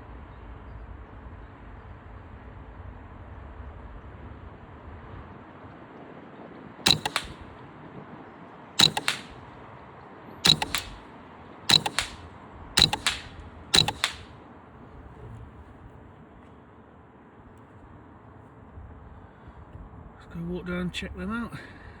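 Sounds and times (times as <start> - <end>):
rifle action clacking: 6.9 - 7.4, 8.8 - 9.4, 10.5 - 11.0, 11.7 - 12.2, 12.8 - 14.3
muffled rifle shots: 6.9 - 7.5, 8.8 - 9.4, 10.5 - 11.0, 11.7 - 14.3.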